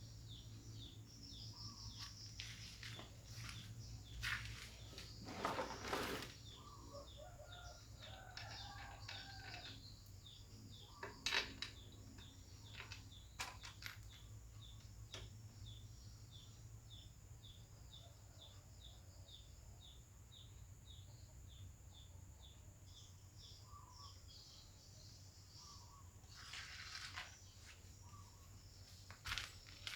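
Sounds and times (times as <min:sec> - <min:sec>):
bird chirping: 0:00.0 - 0:29.9.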